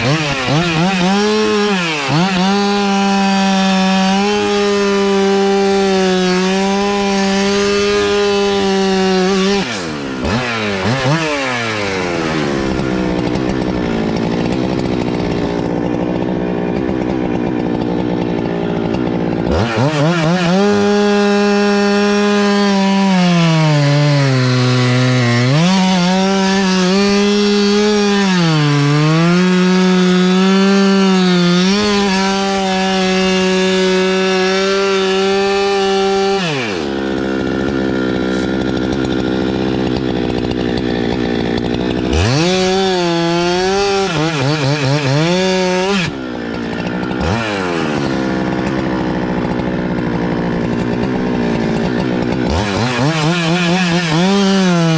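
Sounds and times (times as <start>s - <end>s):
chainsaw cutting wood: 0.0s - 54.9s
chainsaw idling and revving: 0.0s - 54.9s.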